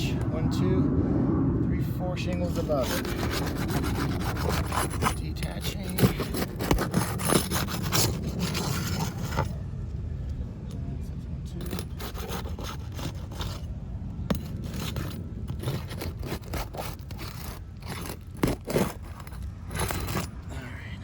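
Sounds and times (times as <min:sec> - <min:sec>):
shingles scraping: 0:02.4 - 0:09.6, 0:11.6 - 0:13.7, 0:14.3 - 0:20.5.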